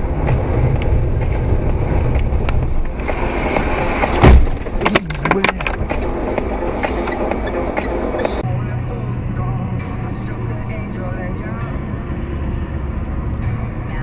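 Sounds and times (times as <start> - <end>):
car driving noise: 0.0 - 14.0
loud thump: 3.6 - 5.1.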